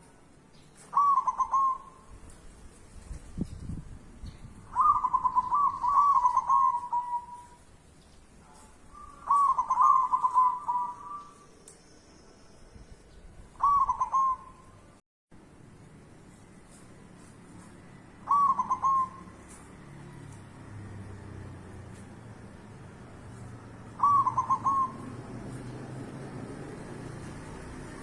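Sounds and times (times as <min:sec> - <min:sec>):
dove cooing: 0:00.9 - 0:02.0, 0:04.7 - 0:07.6, 0:08.9 - 0:11.4, 0:13.6 - 0:14.8, 0:18.2 - 0:19.4, 0:23.8 - 0:25.8.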